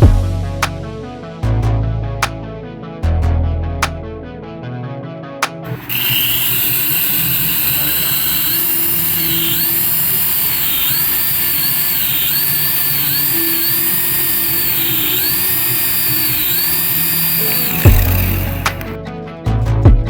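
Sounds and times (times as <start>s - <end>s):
toy electric motor whining: 5.7s - 19.0s.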